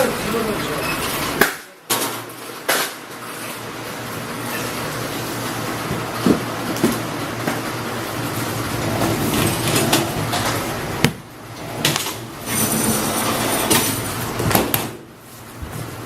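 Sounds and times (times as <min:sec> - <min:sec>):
strapping machine motor humming: 0:07.9 - 0:16.0.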